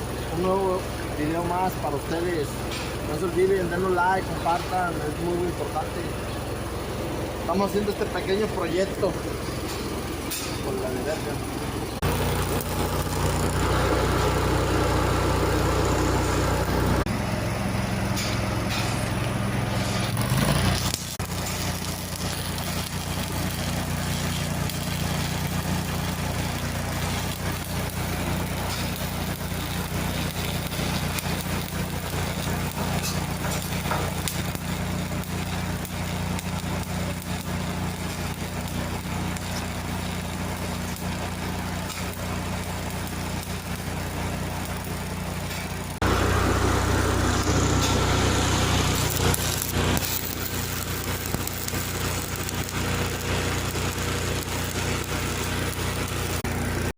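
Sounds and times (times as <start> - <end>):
engine idling: 0.0 - 56.9.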